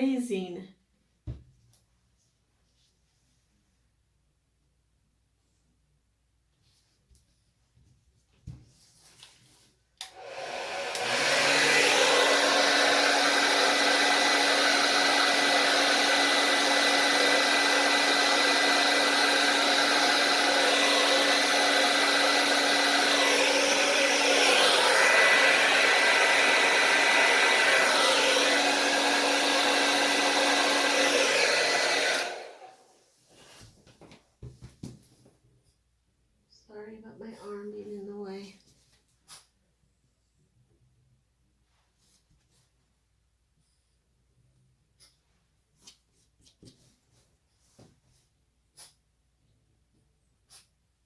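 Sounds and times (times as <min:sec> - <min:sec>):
blow dryer switch: 0:10.0 - 0:32.7
blow dryer running: 0:10.0 - 0:32.8.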